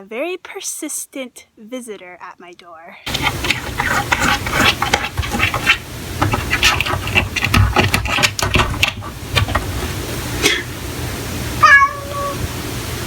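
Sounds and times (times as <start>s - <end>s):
cat scratching at a door: 3.1s - 10.0s.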